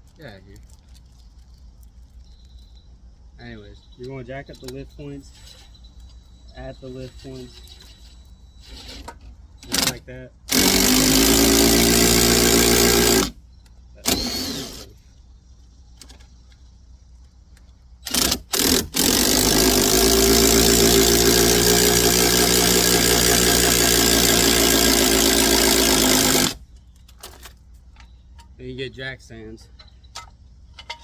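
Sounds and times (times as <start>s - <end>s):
power tool motor running: 9.6s - 13.4s, 14.0s - 14.9s, 18.0s - 26.6s.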